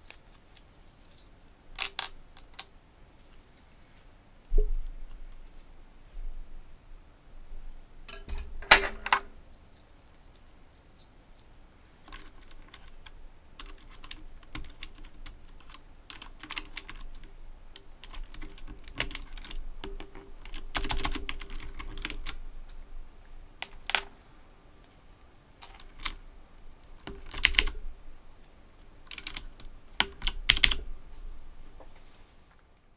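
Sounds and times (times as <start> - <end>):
clicky mechanical keyboard typing: 12.1 - 17.3, 18.0 - 22.4, 27.0 - 27.8, 29.1 - 30.8.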